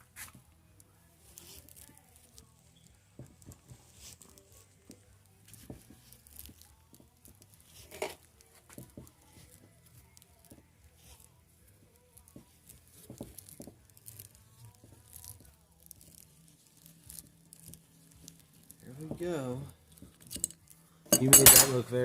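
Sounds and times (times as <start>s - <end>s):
tools clicking on metal: 20.1s - 21.8s.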